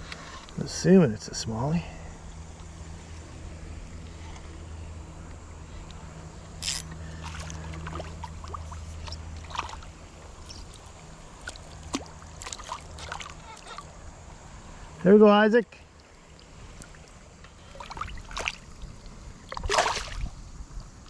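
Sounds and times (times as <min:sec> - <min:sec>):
steady low hum: 0:00.0 - 0:21.0
water sloshing around wading legs: 0:06.6 - 0:14.0, 0:15.9 - 0:20.4
water splashing: 0:07.0 - 0:14.0, 0:16.0 - 0:20.4.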